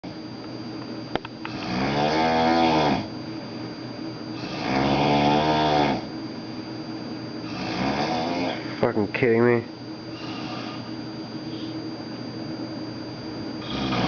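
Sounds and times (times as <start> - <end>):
man snoring: 1.5 - 3.1, 4.3 - 6.1, 7.4 - 8.6, 10.1 - 10.9, 13.6 - 14.0.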